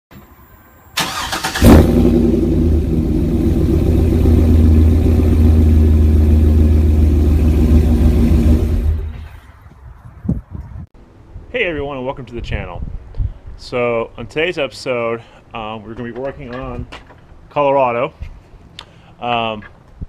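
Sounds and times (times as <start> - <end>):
vehicle engine cranking and idling: 1.0 - 9.4.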